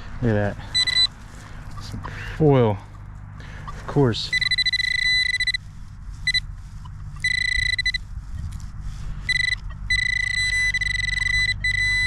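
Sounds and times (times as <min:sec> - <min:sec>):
metal detector beeping: 0:00.7 - 0:01.1, 0:04.2 - 0:05.6, 0:06.2 - 0:08.1, 0:09.2 - 0:12.0.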